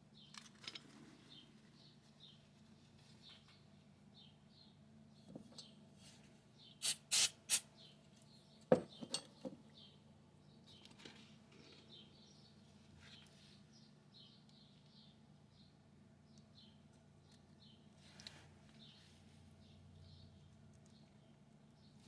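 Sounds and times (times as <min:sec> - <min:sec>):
short hissing bursts: 0:06.8 - 0:07.6.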